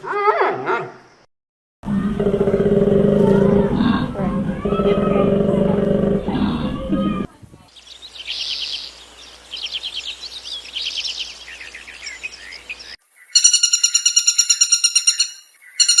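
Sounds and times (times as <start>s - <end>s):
birds chirping trills: 1.9s - 16.0s
rapidly pulsing high-pitched call: 13.3s - 16.0s.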